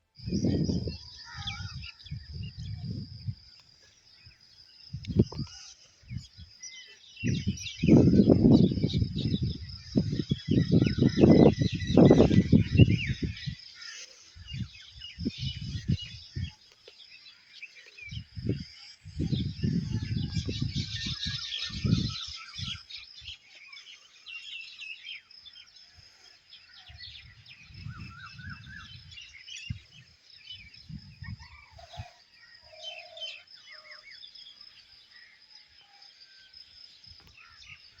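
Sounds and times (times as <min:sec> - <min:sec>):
birds chirping and trilling: 0:00.0 - 0:38.0
wind gusts on microphone: 0:00.1 - 0:16.7, 0:18.0 - 0:23.4, 0:26.8 - 0:32.9.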